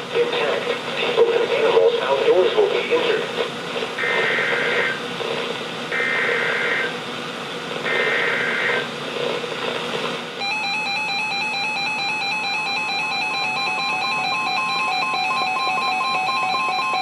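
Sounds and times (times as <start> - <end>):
radio hiss: 0.0 - 10.3
electronic alert tone: 10.4 - 17.0.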